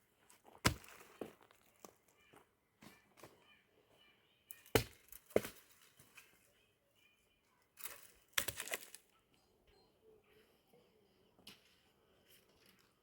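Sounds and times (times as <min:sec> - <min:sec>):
dry wood cracking and splintering: 0:07.8 - 0:09.0.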